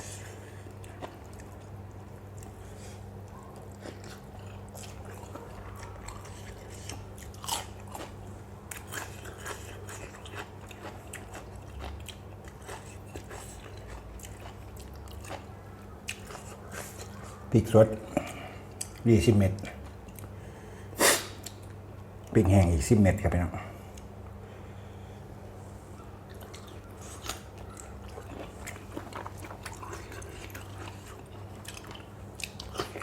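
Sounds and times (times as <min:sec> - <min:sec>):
person chewing crunchy food: 0:00.0 - 0:17.4, 0:25.7 - 0:33.0.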